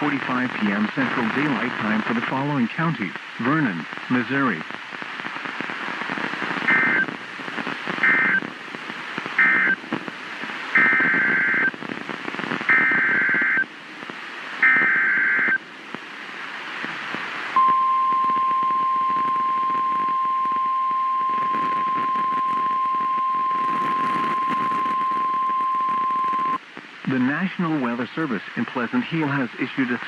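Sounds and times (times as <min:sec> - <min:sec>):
steady warning alarm tone: 0:09.4 - 0:09.8.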